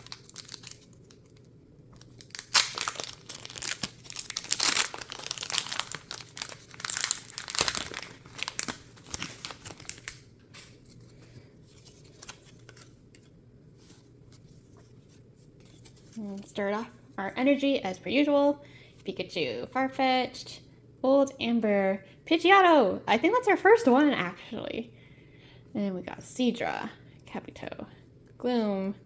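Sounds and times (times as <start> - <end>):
plastic wrapping crinkling and tearing: 0.0 - 13.3.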